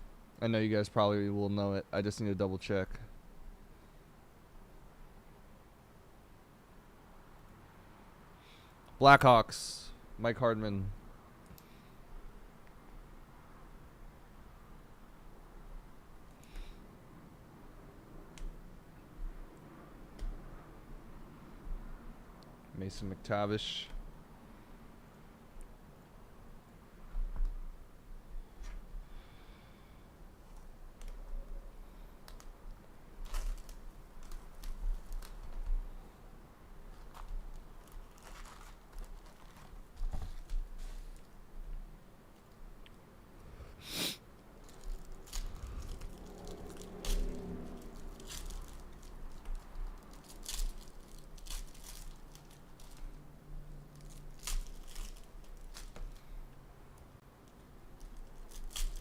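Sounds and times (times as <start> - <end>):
foil wrappers crinkling and tearing: 33.2 - 35.7, 36.9 - 41.3, 44.6 - 53.2, 53.8 - 56.2, 57.9 - 59.0
cards being handled: 36.9 - 41.3, 44.6 - 53.2, 53.9 - 56.4.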